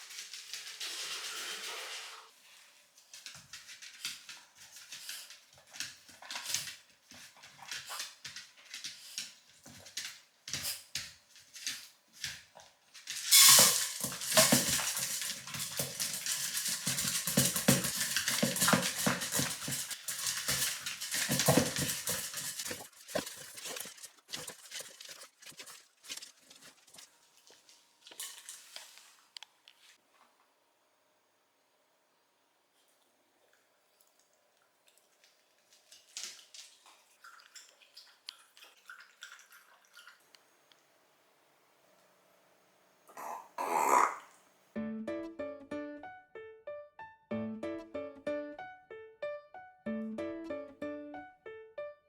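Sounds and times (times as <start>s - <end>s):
dog crunching and licking food: 13.9s - 29.2s, 32.8s - 40.4s.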